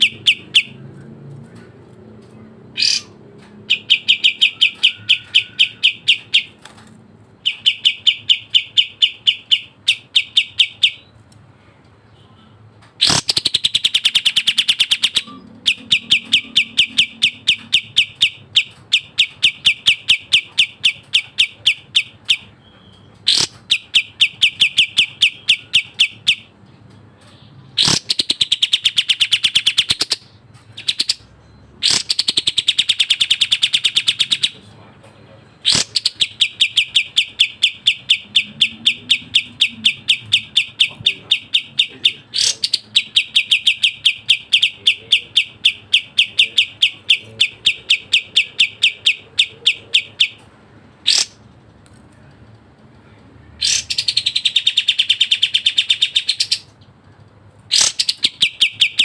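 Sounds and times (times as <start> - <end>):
songbird chattering: 0.0 - 1.7, 2.3 - 6.7, 7.4 - 11.2, 12.1 - 51.5, 53.0 - 56.9, 57.7 - 59.0.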